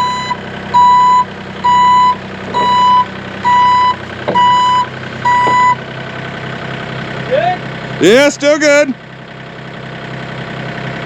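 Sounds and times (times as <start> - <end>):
backup alarm beeping: 0.0 - 5.8
engine humming: 0.0 - 11.0.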